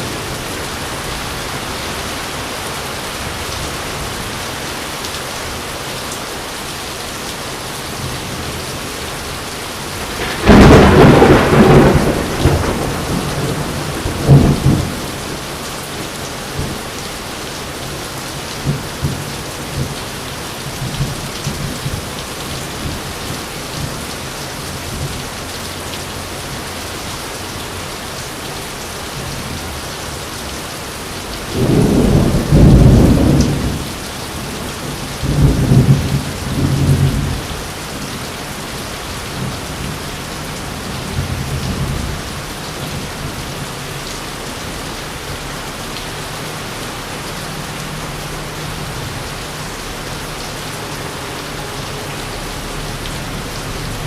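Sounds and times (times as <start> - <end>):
steady rain: 0.0 - 54.0
thunder rumbling: 10.0 - 15.6, 31.4 - 37.6
sharp thunder crack: 10.2 - 14.9.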